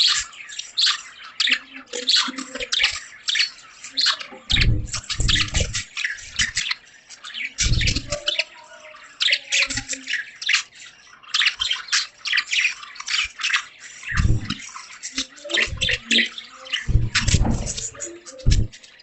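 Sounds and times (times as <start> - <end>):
budgies chattering: 0.0 - 19.0
short low thumps: 4.5 - 5.8, 7.6 - 8.2, 14.2 - 14.6, 15.7 - 16.0, 16.9 - 18.8.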